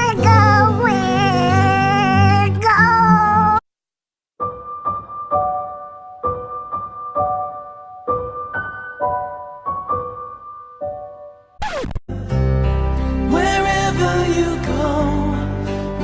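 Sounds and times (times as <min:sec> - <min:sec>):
piano-like keyboard melody: 0:04.4 - 0:11.6.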